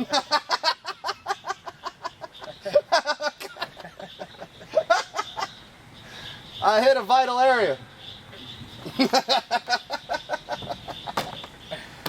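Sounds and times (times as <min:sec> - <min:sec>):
person laughing: 0:00.0 - 0:05.5.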